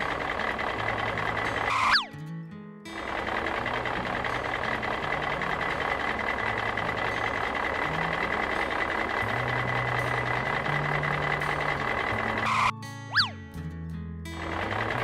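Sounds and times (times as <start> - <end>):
cartoon engine running: 0.0 - 2.2, 3.0 - 13.4, 14.4 - 15.0.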